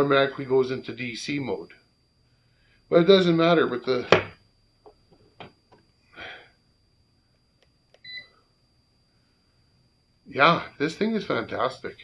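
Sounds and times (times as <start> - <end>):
soft hiss: 0.0 - 12.0
multimeter electronic beep: 8.0 - 8.5.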